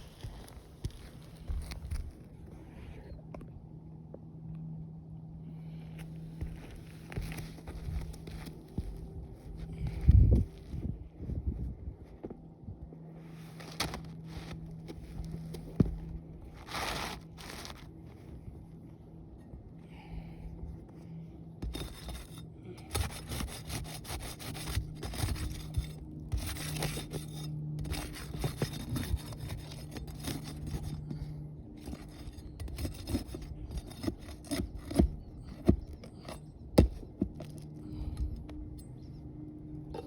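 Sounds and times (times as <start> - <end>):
scraping on roof shingles: 21.6 - 38.2.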